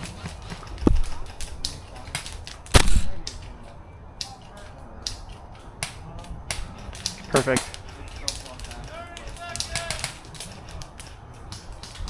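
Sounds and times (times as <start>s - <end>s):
sharp gun shots: 0.9s - 1.6s, 2.7s - 3.4s
airsoft guns clicking: 0.9s - 3.5s.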